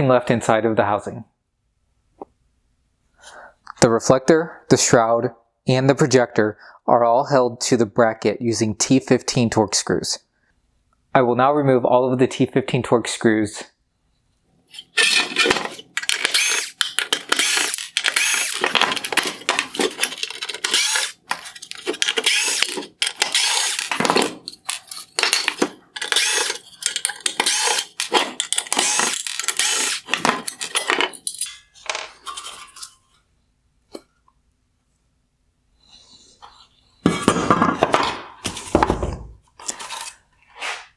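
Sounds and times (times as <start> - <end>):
small parts clattering: 14.7 - 33.0
tool rattling and scraping screws: 14.7 - 33.0, 39.6 - 40.2.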